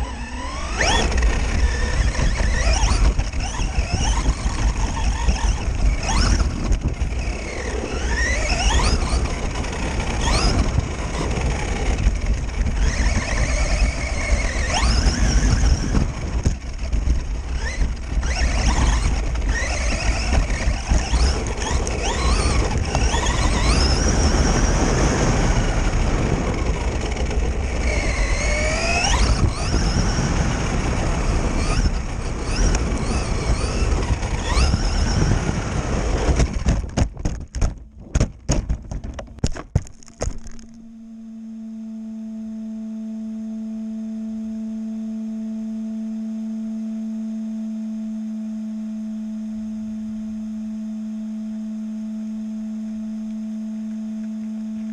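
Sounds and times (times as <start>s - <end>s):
electric motor whining: 0.0s - 37.0s, 40.0s - 54.9s
steady low hum tone: 37.7s - 54.9s.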